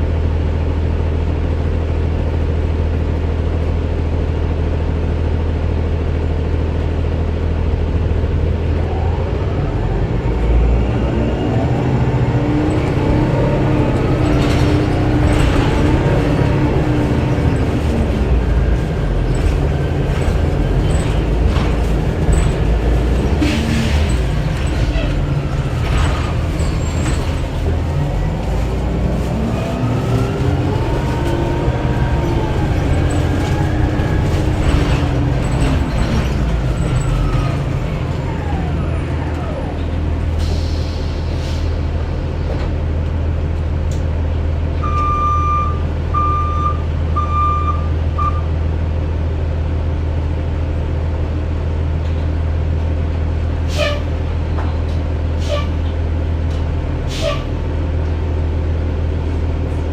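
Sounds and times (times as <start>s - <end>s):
low diesel engine hum: 0.0s - 59.9s
short electronic beeps: 44.8s - 48.5s.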